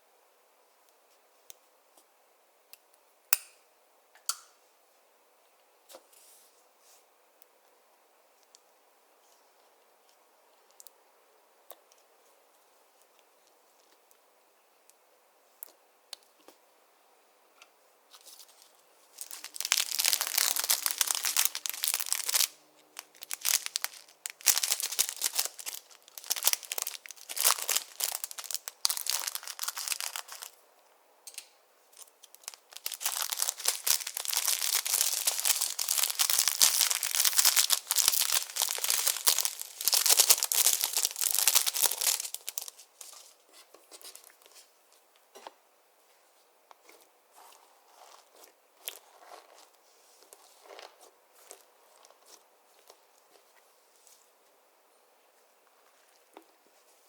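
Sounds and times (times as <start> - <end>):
slime crackling and popping: 19.2 - 30.5, 32.0 - 42.8.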